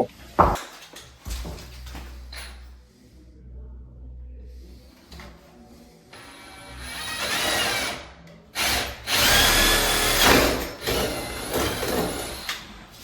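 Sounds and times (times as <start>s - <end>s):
power drill boring into wood: 8.6s - 10.6s.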